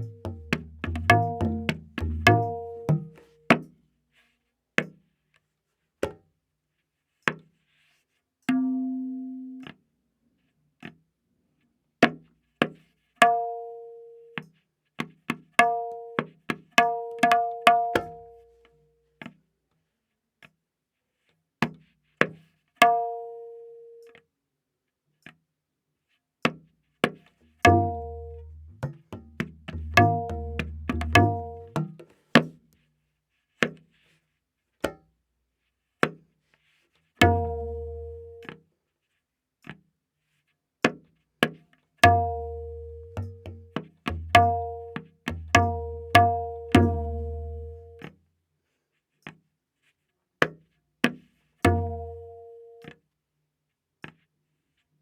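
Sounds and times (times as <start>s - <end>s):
ringing tabla strokes: 0.0s - 3.7s, 27.6s - 32.5s, 37.2s - 38.6s, 42.0s - 48.1s, 51.6s - 53.0s.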